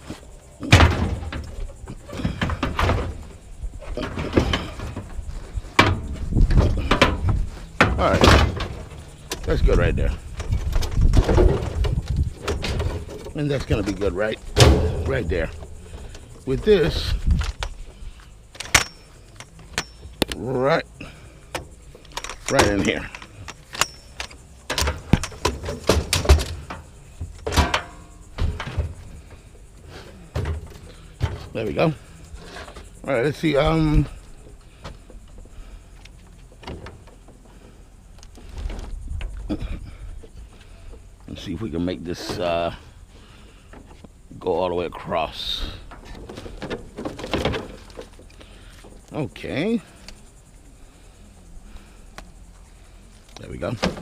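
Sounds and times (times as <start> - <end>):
scrap metal banging and knocking: 0.0 - 20.2, 21.5 - 35.8.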